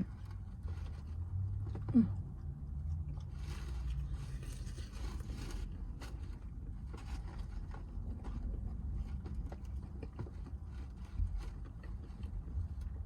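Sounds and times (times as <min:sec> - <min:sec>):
chewing bread: 0:00.0 - 0:13.0
low steady car rumble: 0:00.0 - 0:13.0
scraping rustle: 0:03.2 - 0:12.9.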